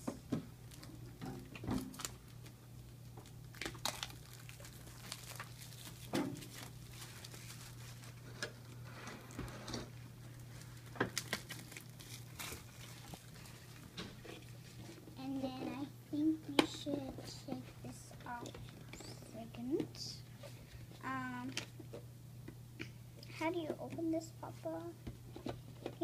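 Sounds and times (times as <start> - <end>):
steady low hum: 0.0 - 26.0
plastic packaging crinkling: 1.8 - 9.5, 10.3 - 15.0.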